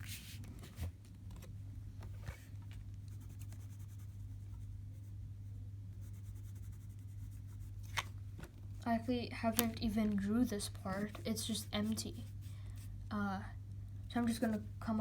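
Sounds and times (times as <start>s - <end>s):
steady low hum: 0.0s - 15.0s
pencil scratching on paper: 3.1s - 5.2s, 6.0s - 7.8s, 10.8s - 12.9s.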